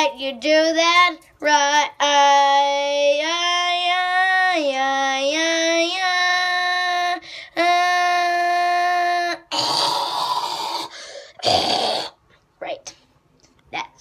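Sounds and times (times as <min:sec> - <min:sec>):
child singing long held notes: 0:01.6 - 0:09.5.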